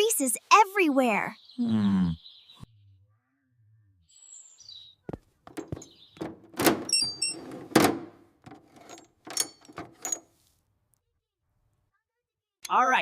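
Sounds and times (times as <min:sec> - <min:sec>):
cartoon knocks and thuds: 0:05.5 - 0:08.7.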